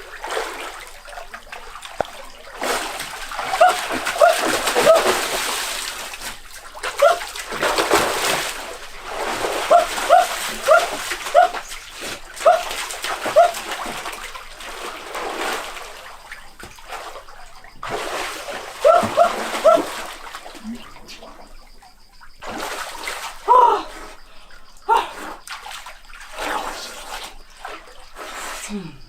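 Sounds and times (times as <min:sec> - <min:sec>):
water splashing: 0:00.0 - 0:24.3, 0:24.9 - 0:28.6
high-pitched yelps: 0:03.6 - 0:05.2, 0:07.0 - 0:07.3, 0:09.7 - 0:11.6, 0:12.4 - 0:12.7, 0:13.3 - 0:13.6, 0:18.8 - 0:19.9.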